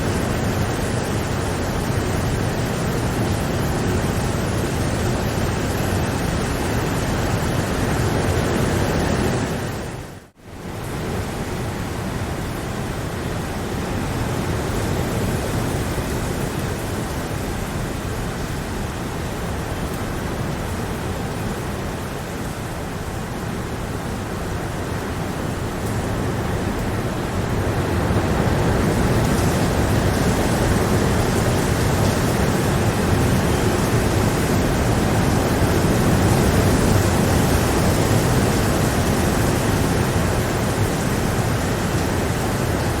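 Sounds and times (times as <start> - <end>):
heavy rain: 0.0 - 43.0.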